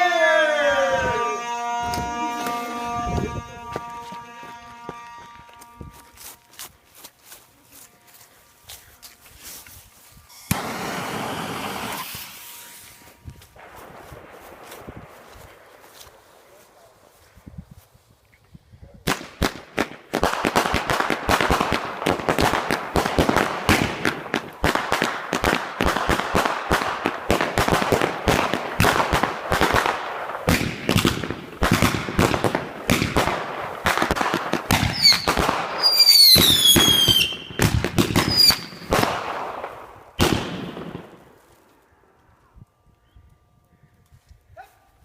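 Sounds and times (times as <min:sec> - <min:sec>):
fireworks crackling and popping: 0:00.0 - 0:41.9
firework whistle sliding down: 0:10.3 - 0:13.3, 0:34.9 - 0:37.4, 0:38.3 - 0:38.6.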